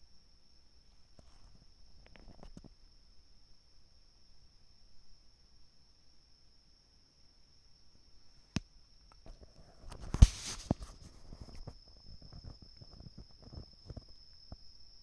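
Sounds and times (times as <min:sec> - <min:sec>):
quick scuffling clicks: 0:09.9 - 0:11.6.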